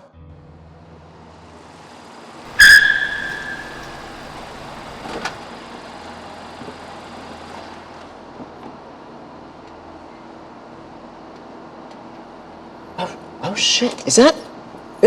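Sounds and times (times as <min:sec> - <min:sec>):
struck ding ringing: 0:02.5 - 0:05.2.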